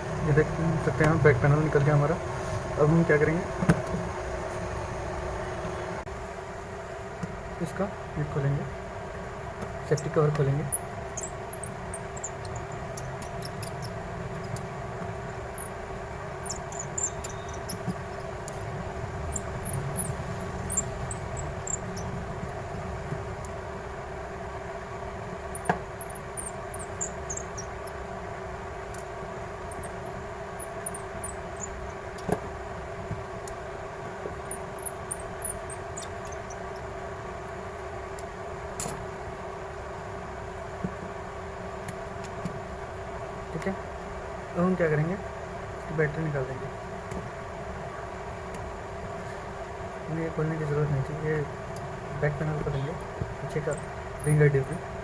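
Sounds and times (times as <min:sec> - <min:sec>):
room fan humming: 0:00.0 - 0:55.0
small tools clicking: 0:10.7 - 0:14.7, 0:16.4 - 0:18.6.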